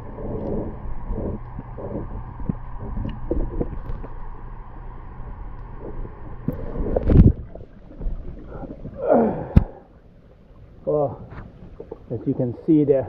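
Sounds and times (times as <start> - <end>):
pond water sloshing and gurgling: 0.0 - 13.0
water swishes: 0.0 - 13.0
wind rumbling on microphone: 5.2 - 9.6.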